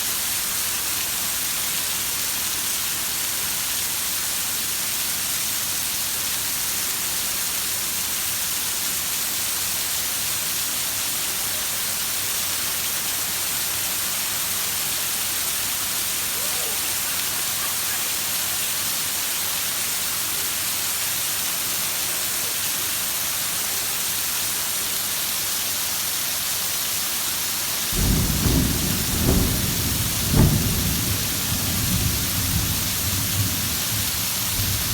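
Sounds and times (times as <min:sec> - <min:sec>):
heavy rain: 0:00.0 - 0:34.9
thunder rumble: 0:27.9 - 0:34.9.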